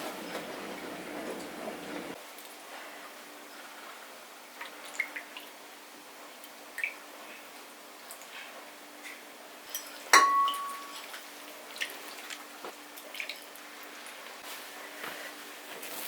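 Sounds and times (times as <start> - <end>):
ringing glass clink: 10.2 - 11.0.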